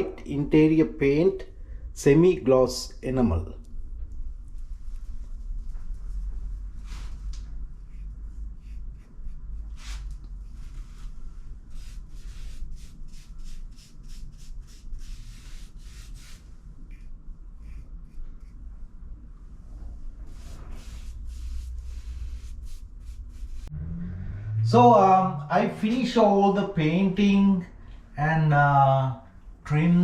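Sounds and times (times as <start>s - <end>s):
low steady rumble: 0.0s - 30.0s
paintbrush swishes: 9.7s - 16.5s, 20.3s - 23.7s.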